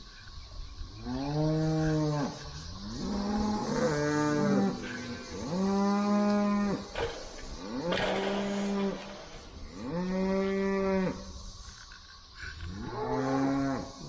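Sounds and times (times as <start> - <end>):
sharp click: 7.0 - 9.7.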